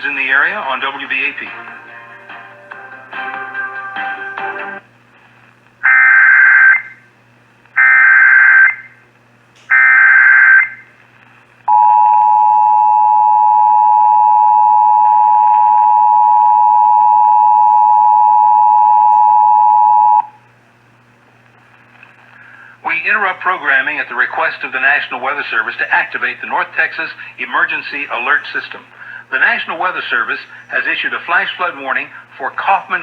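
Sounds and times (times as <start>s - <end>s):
steady two-tone attention signal: 11.7s - 20.4s.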